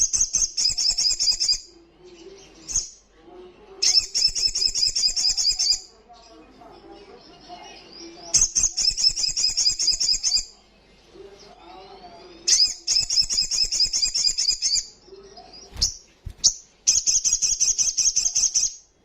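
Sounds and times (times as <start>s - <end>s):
sunbird trilling song: 8.0s - 10.5s, 12.5s - 15.0s, 15.7s - 18.9s.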